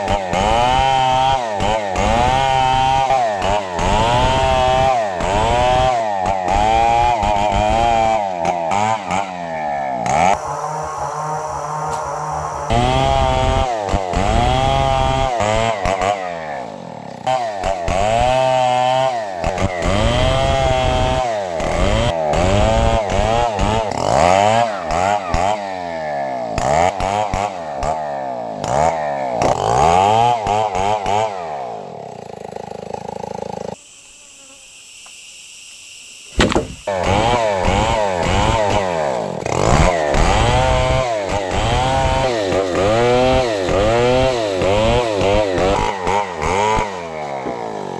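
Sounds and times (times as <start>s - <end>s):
chainsaw cutting wood: 0.0s - 35.2s, 36.3s - 47.9s
sharp click: 36.4s - 36.9s.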